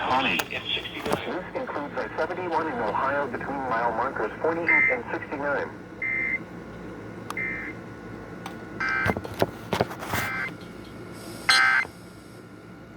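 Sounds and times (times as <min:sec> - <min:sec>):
static crackles and clicks: 0:00.0 - 0:05.4.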